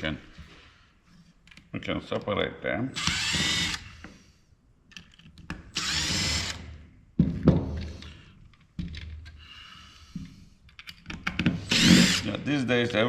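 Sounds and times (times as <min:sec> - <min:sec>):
power screwdriver motor whine: 0:03.0 - 0:03.9, 0:05.8 - 0:06.7, 0:11.7 - 0:12.3.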